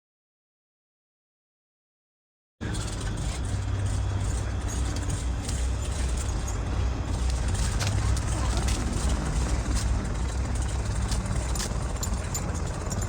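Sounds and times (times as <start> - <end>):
low rumbling vehicle engine: 2.6 - 13.0.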